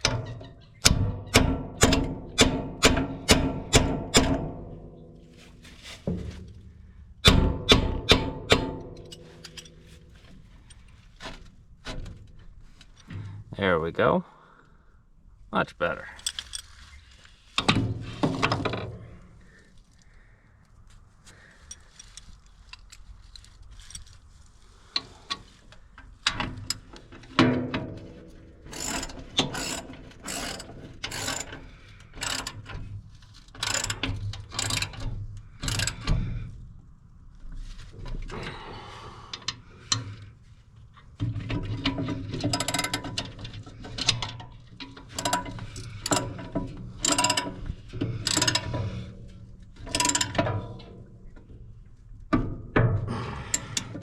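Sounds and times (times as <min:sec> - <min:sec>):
ratchet wrench clicking: 0:28.6 - 0:32.7, 0:33.5 - 0:36.1, 0:42.5 - 0:43.3, 0:45.1 - 0:47.6, 0:48.2 - 0:49.0, 0:49.8 - 0:50.4.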